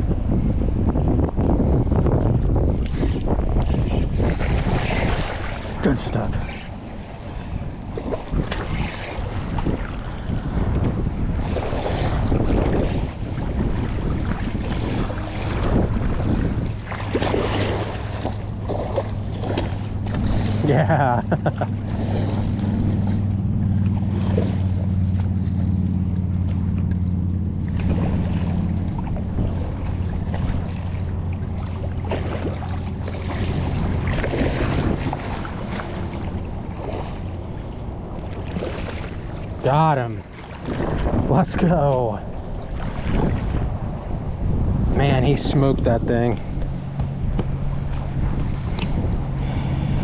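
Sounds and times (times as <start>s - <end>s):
steady low hum: 0.0s - 11.6s, 12.2s - 50.0s
wind buffeting microphone: 0.0s - 50.0s.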